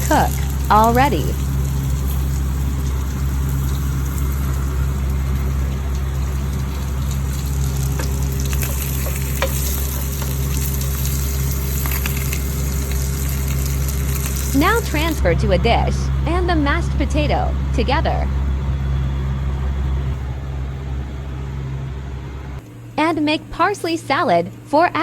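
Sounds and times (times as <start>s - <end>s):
fish sizzling on a grill: 0.0s - 15.2s
low hum: 0.0s - 25.0s.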